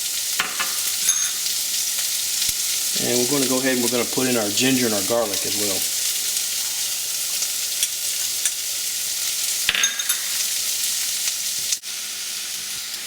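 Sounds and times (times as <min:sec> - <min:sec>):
onion sizzling in hot oil: 0:00.0 - 0:13.0
utensil clattering against pan: 0:00.4 - 0:01.5, 0:09.7 - 0:10.4.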